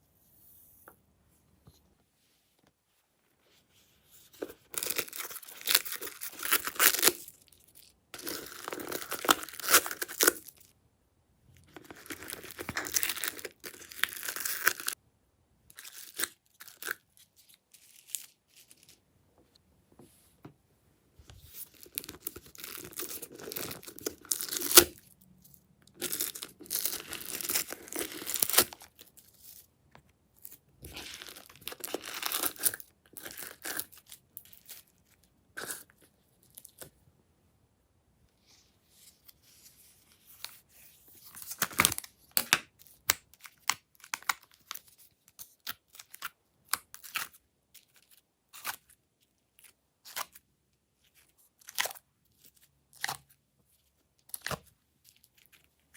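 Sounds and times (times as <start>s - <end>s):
slime crackling and tearing: 4.8s - 7.5s, 8.2s - 10.6s, 11.8s - 15.0s, 21.8s - 25.0s, 25.9s - 29.0s.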